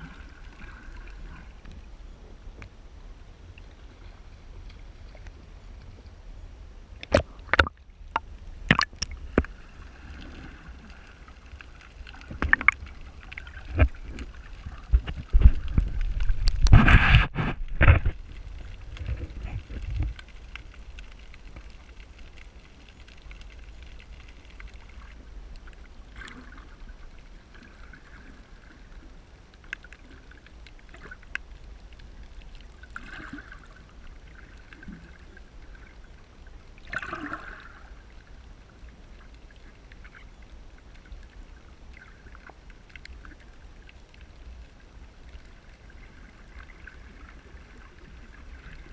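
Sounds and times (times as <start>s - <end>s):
water splashing and sloshing: 0.0s - 6.2s, 6.9s - 48.9s
water gurgling: 6.9s - 48.9s
faint clicks: 17.8s - 26.3s, 29.4s - 33.0s, 39.1s - 46.8s.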